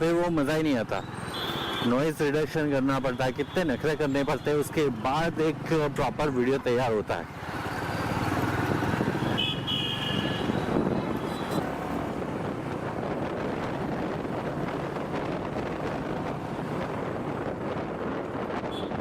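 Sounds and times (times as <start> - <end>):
motorcycle road and engine noise: 0.0 - 19.0
wind rushing over microphone: 8.1 - 9.4, 10.2 - 19.0.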